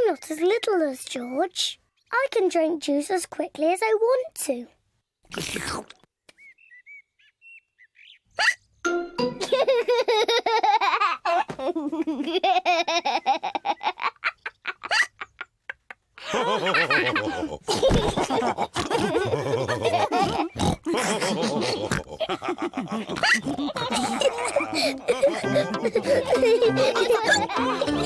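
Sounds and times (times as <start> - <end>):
cartoon characters laughing: 9.3 - 28.0.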